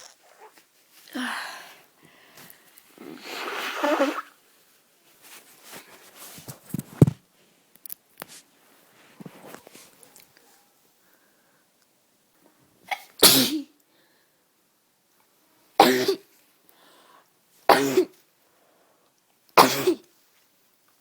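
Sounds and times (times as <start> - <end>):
person coughing and sneezing: 12.9 - 13.7, 15.8 - 16.3, 17.7 - 18.2, 19.6 - 20.1.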